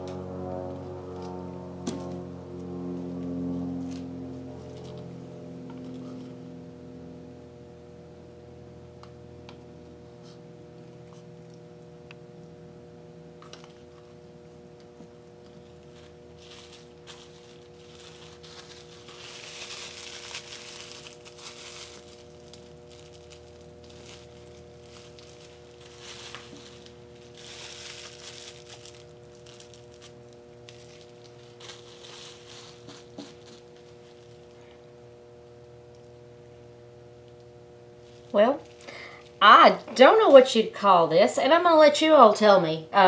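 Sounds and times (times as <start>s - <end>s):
faint room hum: 0.0s - 43.0s
bubble wrap crinkling: 15.4s - 34.8s, 37.3s - 40.7s.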